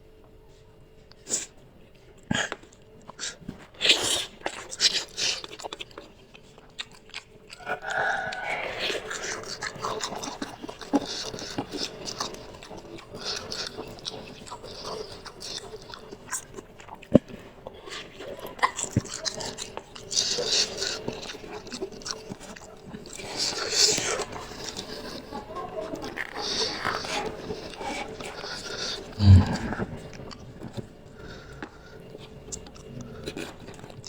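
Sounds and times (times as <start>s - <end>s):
chewing and wet mouth noises: 0.6s - 34.0s.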